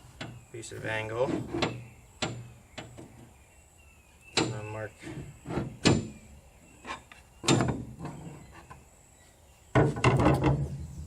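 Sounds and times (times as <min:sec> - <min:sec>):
metal tapping on aluminum frame: 0:01.3 - 0:03.1, 0:04.3 - 0:04.8.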